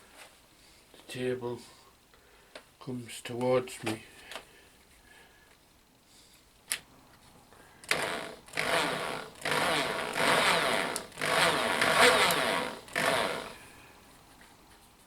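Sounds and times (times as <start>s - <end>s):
pistol drill running: 7.9s - 13.6s.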